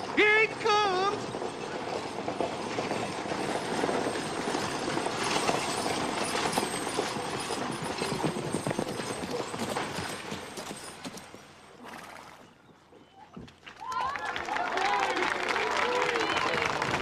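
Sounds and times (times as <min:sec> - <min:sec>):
coach wheels rumbling: 0:00.0 - 0:11.8, 0:13.8 - 0:17.0
hooves clip-clopping: 0:01.1 - 0:11.6.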